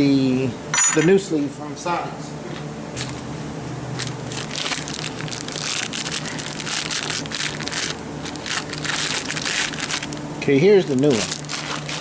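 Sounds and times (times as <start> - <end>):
steady low hum: 0.0 - 12.0
plastic packaging crinkling: 4.0 - 12.0.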